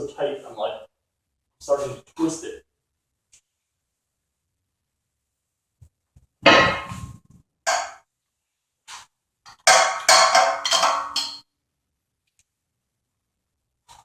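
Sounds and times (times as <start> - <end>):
vise metal clanks and knocks: 6.4 - 8.0, 9.5 - 11.4.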